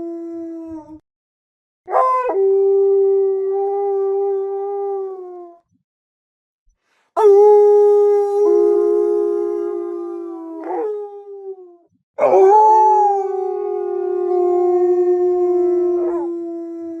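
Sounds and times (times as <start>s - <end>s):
wolves howling: 7.2s - 17.0s.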